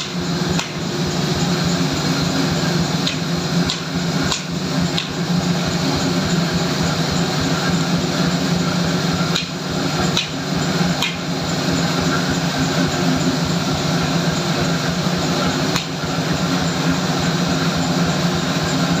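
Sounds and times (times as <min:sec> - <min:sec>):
workshop machinery humming: 0:00.0 - 0:19.0.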